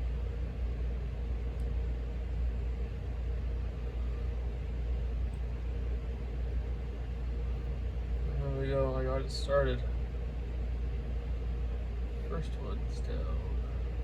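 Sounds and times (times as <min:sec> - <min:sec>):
low room hum: 0:00.0 - 0:14.0.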